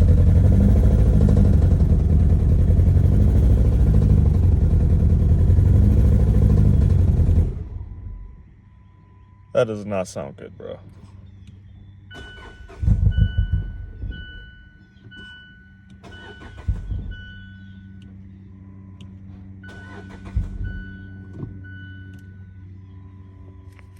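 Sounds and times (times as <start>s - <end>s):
steady low hum: 0.0s - 23.9s
car engine cranking roughly: 12.1s - 13.8s, 16.0s - 17.2s, 19.6s - 21.0s
dashboard warning chime beeping: 12.1s - 23.9s.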